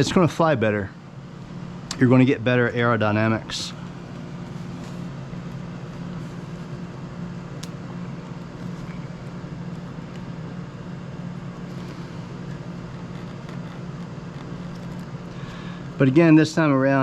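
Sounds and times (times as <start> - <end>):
machine hum: 0.0 - 17.0.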